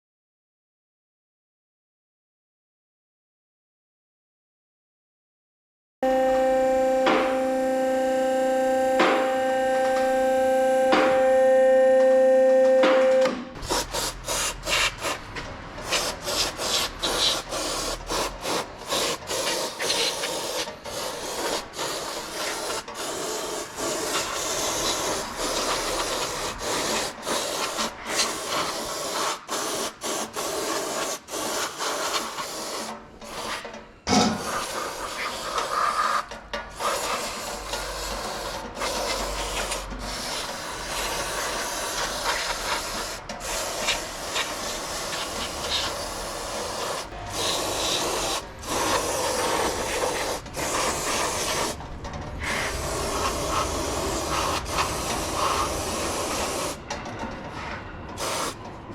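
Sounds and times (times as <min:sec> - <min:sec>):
hand scrubbing brake parts: 0:13.6 - 0:33.6, 0:34.4 - 0:56.8.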